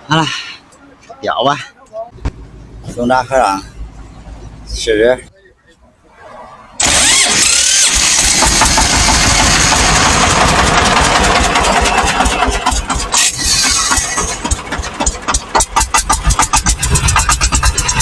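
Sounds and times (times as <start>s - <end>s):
diesel engine clattering: 6.8s - 18.0s.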